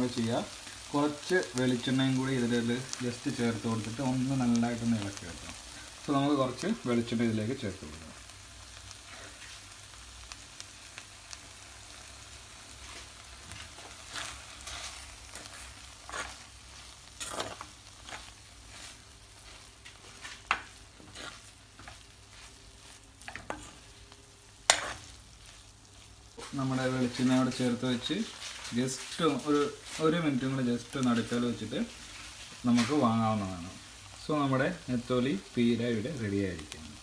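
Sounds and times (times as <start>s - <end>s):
faint oil sizzle: 0.0s - 37.0s
spoon scraping in a pan: 8.8s - 9.7s, 12.9s - 24.0s, 24.6s - 26.5s.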